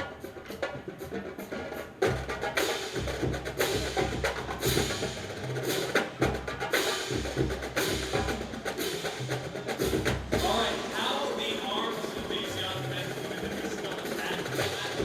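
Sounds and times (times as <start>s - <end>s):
marching drumline: 0.0s - 15.0s
bass drum strokes: 7.1s - 12.6s.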